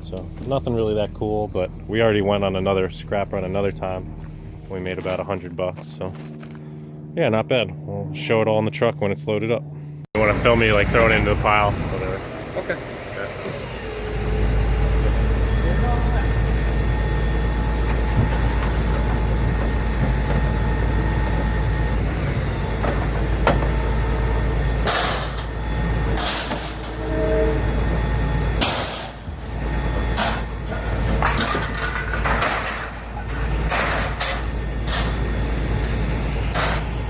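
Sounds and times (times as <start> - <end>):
steady low rumble: 0.0 - 37.0
scrap metal clanging into truck bed: 24.8 - 35.3, 36.5 - 37.0.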